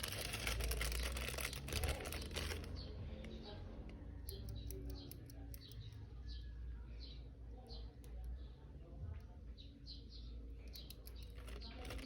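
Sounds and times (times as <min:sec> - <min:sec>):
plastic packaging crinkling: 0:00.0 - 0:02.8, 0:11.4 - 0:12.0.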